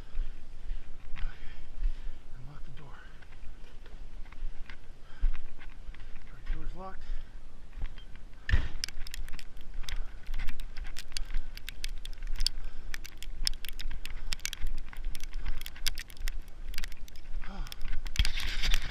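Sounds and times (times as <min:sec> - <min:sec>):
thump: 0:08.5 - 0:08.8.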